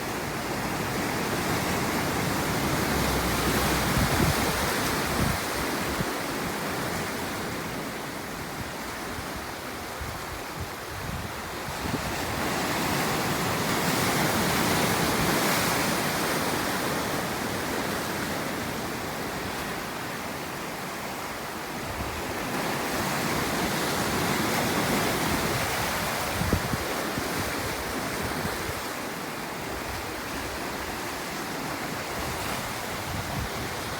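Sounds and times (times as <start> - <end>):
waves breaking on shore: 0.0 - 33.9
wind buffeting microphone: 0.2 - 6.5, 8.4 - 12.5, 24.8 - 28.9, 32.0 - 33.9.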